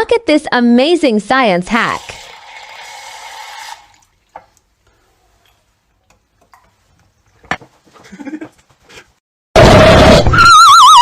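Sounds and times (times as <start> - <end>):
water running: 1.7 - 7.5.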